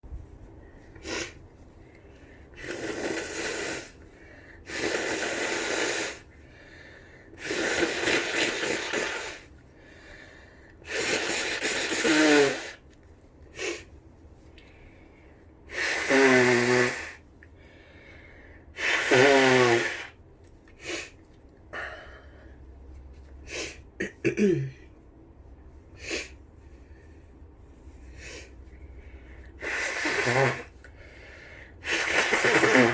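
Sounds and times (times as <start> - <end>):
person blowing nose: 0.9 - 1.4, 2.6 - 6.4, 7.4 - 9.5, 10.8 - 12.8, 13.5 - 13.9, 15.7 - 17.2, 18.8 - 20.2, 20.8 - 21.2, 23.4 - 23.8, 26.0 - 26.4, 28.0 - 28.6, 29.5 - 32.9
person sniffing: 0.9 - 1.5, 2.6 - 6.3, 7.4 - 9.5, 10.8 - 12.8, 13.5 - 13.9, 15.7 - 17.2, 18.8 - 20.1, 23.4 - 23.9, 26.0 - 27.1, 27.9 - 32.9.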